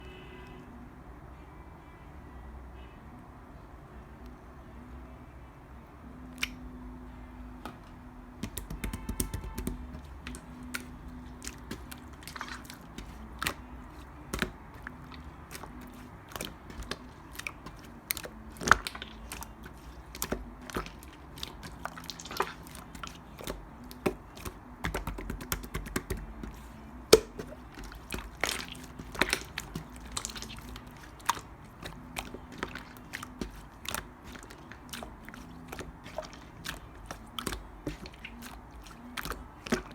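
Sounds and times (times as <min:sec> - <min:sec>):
slime squeezed with sticky pops: 0:08.4 - 0:39.9.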